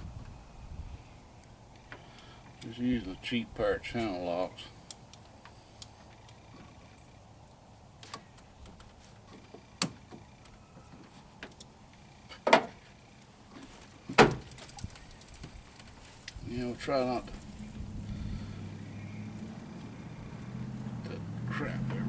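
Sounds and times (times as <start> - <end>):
steady low hum: 16.1 - 22.0.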